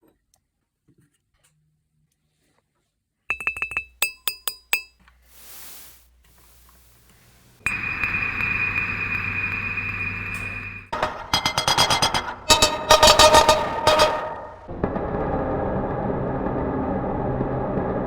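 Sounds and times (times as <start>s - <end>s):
mug ringing clinks: 3.3s - 5.0s, 7.7s - 11.0s
short hiss: 5.2s - 7.6s
loud ringing drone: 7.7s - 17.8s.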